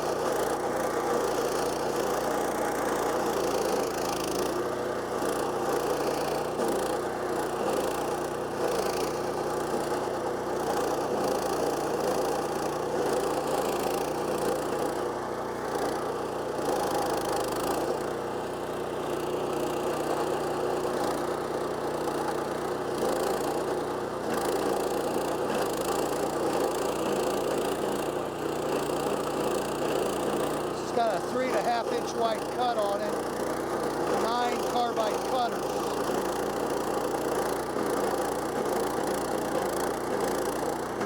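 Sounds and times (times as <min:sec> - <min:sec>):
stump grinder engine running: 0:00.0 - 0:41.0.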